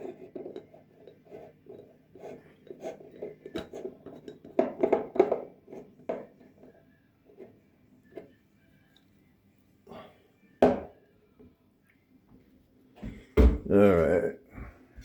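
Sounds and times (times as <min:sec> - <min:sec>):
kitchen containers and utensils handled: 0:00.0 - 0:08.3.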